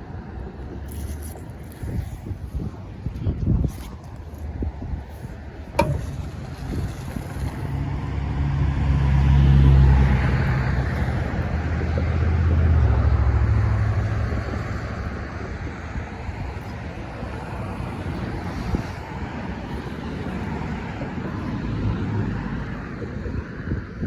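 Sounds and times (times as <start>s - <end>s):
wind on microphone: 0.0s - 24.0s
vehicle passing: 6.0s - 15.4s.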